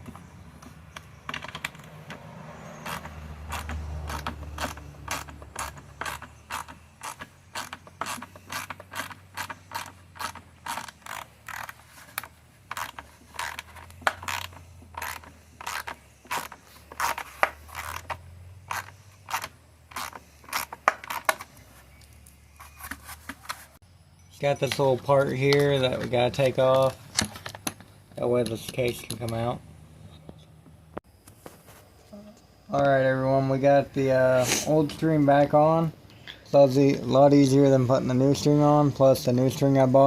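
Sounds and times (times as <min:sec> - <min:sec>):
ratchet wrench clicking: 0:02.8 - 0:21.4.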